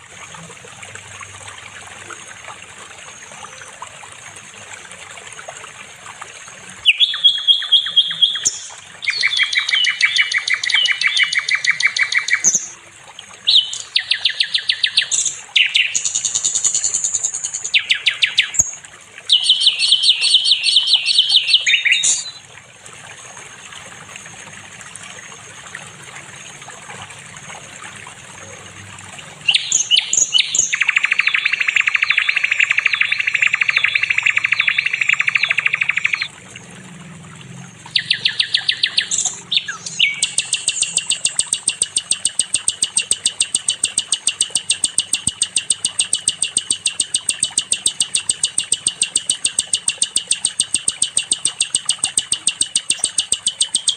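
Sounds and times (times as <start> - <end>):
songbird singing fast trills: 6.8 - 12.8, 13.4 - 22.4, 29.4 - 36.3, 37.9 - 53.9.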